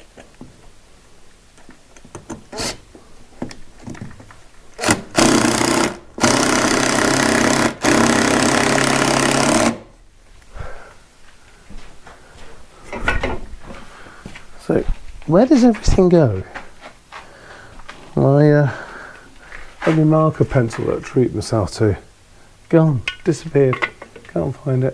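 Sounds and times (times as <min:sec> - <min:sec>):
handheld power tool running: 0:04.8 - 0:09.9.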